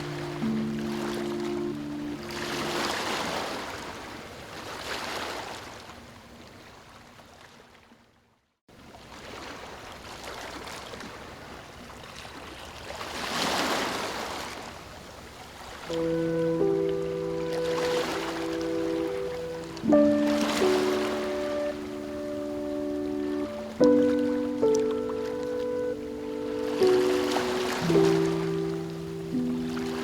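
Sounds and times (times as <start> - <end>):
soft music with long notes: 0.0 - 3.6, 15.9 - 30.0
ocean waves washing in: 0.0 - 5.8, 13.0 - 30.0.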